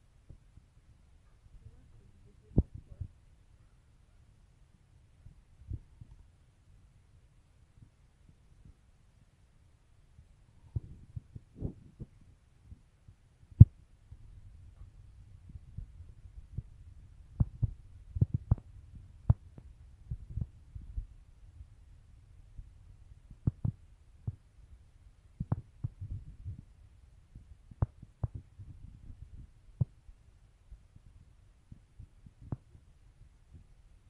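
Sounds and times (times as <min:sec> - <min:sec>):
low rumble: 0:13.6 - 0:24.8.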